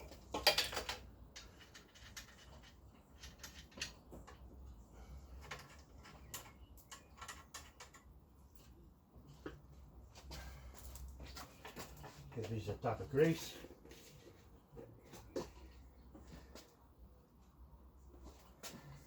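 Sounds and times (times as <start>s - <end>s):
small metal parts clicking and rattling: 0.0s - 4.6s, 5.3s - 8.8s.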